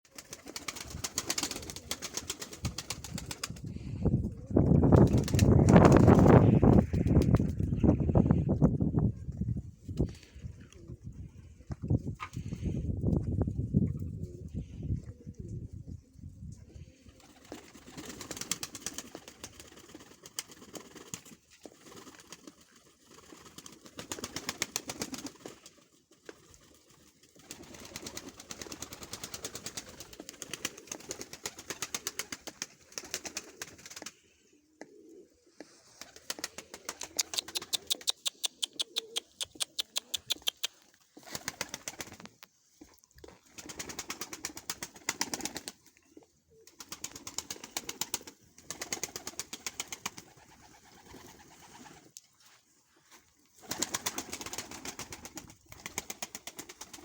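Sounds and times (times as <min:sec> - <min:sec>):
pigeons cooing: 0:27.4 - 0:42.0.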